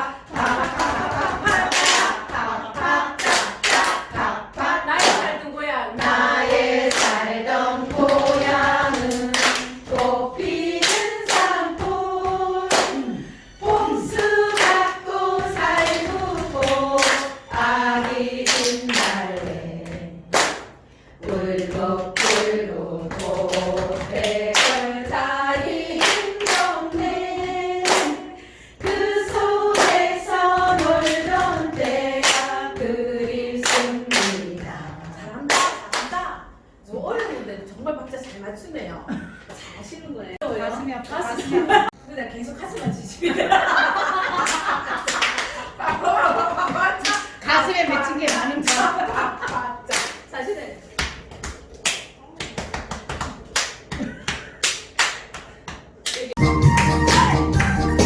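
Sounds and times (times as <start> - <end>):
voices singing in unison: 0.0 - 36.1
hand clapping body percussion: 0.3 - 5.4, 6.0 - 36.2, 44.4 - 50.3, 51.0 - 58.0.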